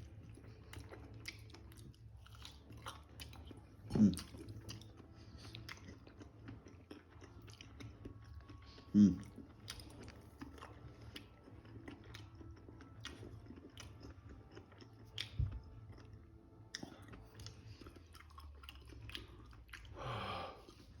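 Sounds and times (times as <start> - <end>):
wet chewing with smacking clicks: 0.0 - 20.0
loud breathy sound: 20.0 - 20.7.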